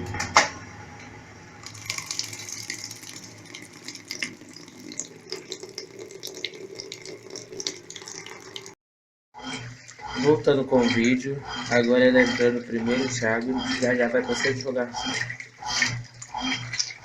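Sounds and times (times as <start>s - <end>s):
water dripping and trickling: 1.6s - 8.8s
water splashing in washing machine: 1.6s - 8.8s, 9.4s - 17.0s.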